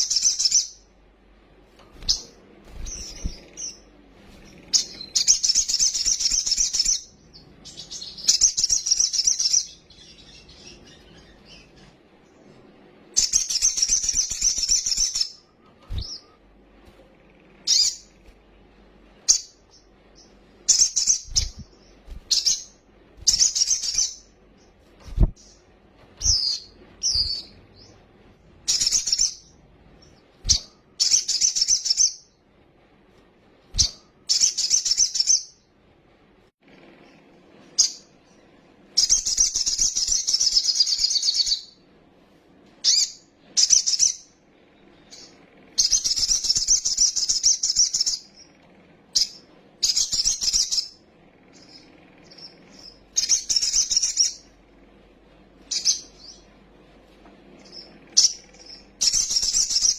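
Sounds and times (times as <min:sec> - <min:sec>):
songbird chattering song: 0:19.2 - 0:32.3, 0:42.8 - 0:48.6, 0:49.2 - 0:54.5, 0:55.6 - 0:56.5, 0:57.5 - 0:59.9.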